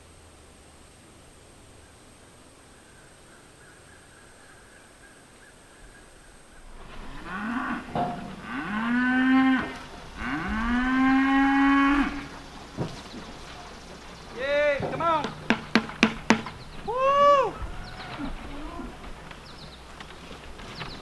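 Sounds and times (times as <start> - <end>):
cattle mooing: 6.7 - 13.7, 16.6 - 19.1.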